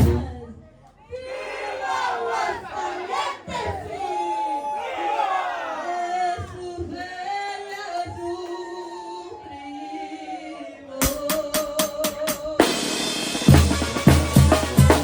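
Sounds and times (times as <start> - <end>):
brass band playing: 12.7 - 15.0.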